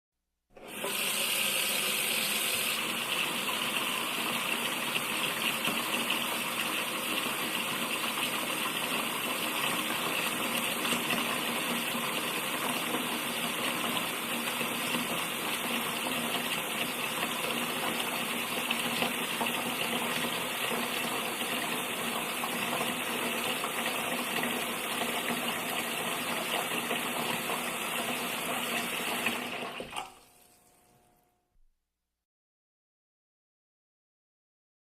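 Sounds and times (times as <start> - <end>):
tap water running into sink: 0.6 - 31.0.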